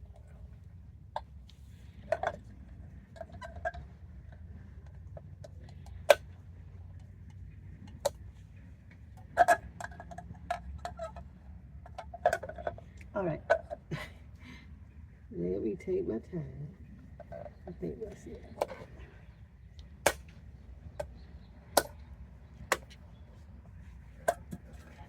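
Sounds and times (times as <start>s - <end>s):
wheel cap clicking and knocking: 1.1s - 13.9s, 19.8s - 23.1s, 24.2s - 25.0s.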